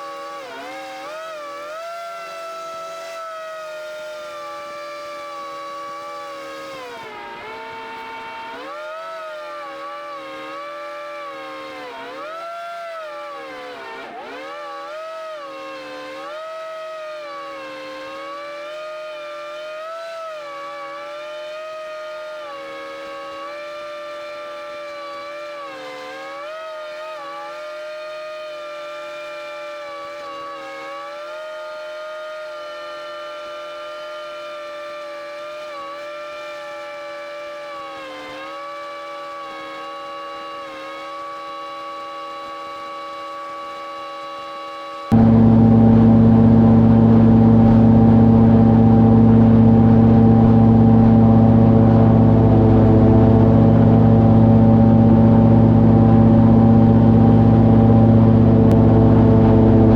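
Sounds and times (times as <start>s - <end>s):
airboat engine and propeller drone: 45.1s - 59.9s.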